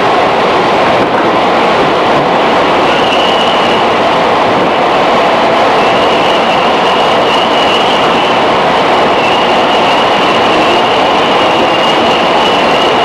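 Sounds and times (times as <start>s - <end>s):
train rumbling along track: 0.0s - 13.0s
high-pitched squeal: 2.8s - 4.2s, 5.6s - 13.0s.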